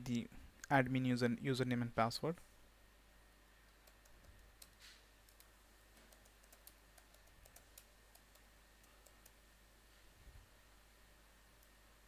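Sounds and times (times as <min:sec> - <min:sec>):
faint keyboard typing: 0:03.6 - 0:09.5.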